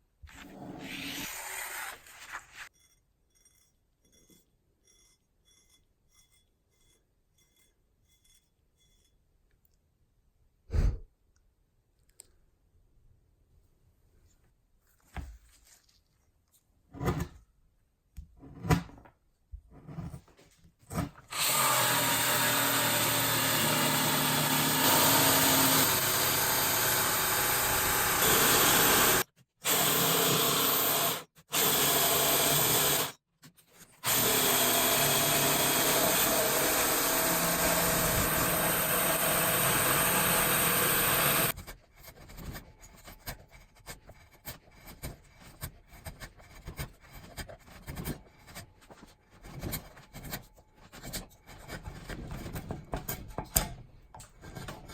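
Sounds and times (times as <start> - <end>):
power tool running: 21.3 - 33.1, 34.0 - 41.5.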